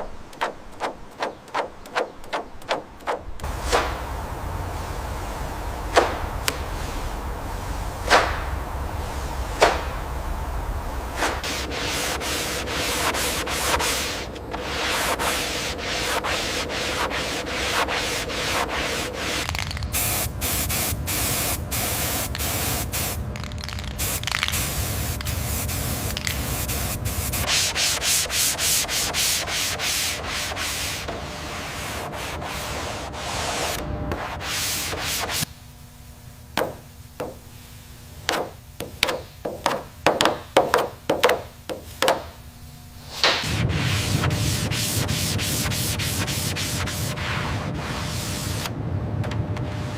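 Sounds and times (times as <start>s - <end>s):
hand sanding: 0.3s - 10.3s, 11.0s - 35.5s, 43.1s - 48.7s
sharp knocks: 9.6s - 10.0s, 38.2s - 42.4s.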